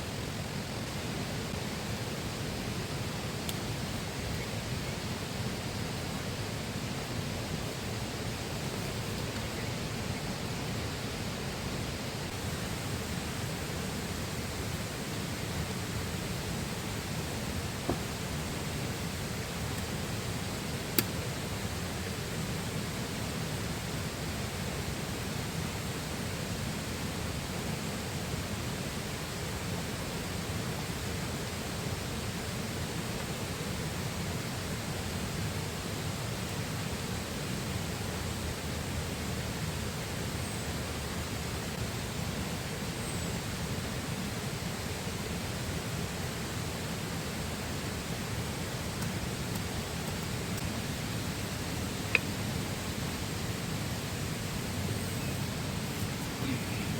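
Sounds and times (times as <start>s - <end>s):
river rushing: 44.3s - 56.9s.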